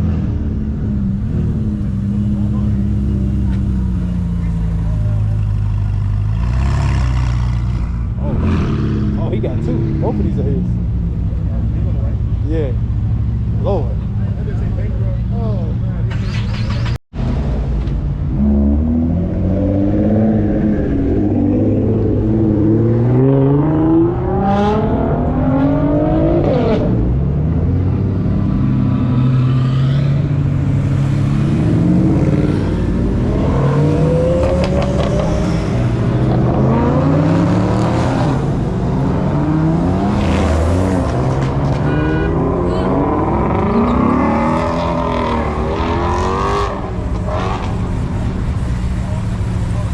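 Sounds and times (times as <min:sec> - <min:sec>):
sports car engines accelerating: 0:00.0 - 0:49.9.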